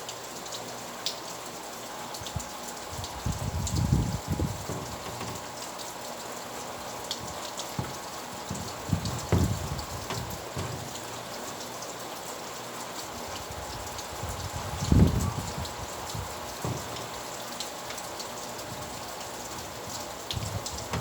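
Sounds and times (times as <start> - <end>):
steady rain falling: 0.0 - 21.0
drops ticking on a surface: 2.1 - 12.1, 12.9 - 21.0
dull low thumps: 3.0 - 5.5, 7.2 - 11.2, 14.2 - 17.3.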